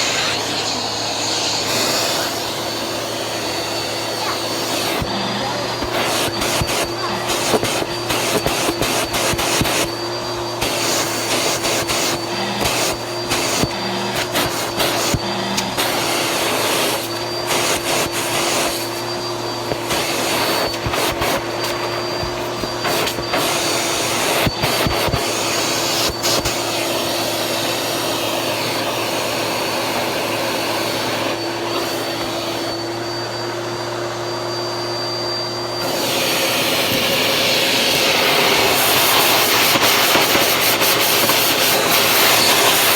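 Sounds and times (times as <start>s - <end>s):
vacuum cleaner motor whine: 0.0s - 42.9s.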